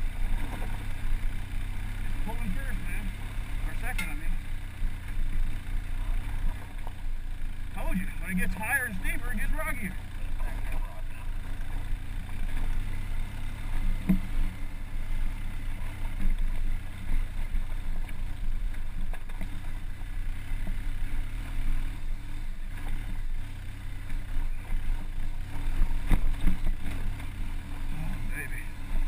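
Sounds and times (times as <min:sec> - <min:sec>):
off-road vehicle engine rumble: 0:00.0 - 0:29.0
sharp knocks from rough ground: 0:03.8 - 0:07.2, 0:11.5 - 0:14.8, 0:24.0 - 0:28.0.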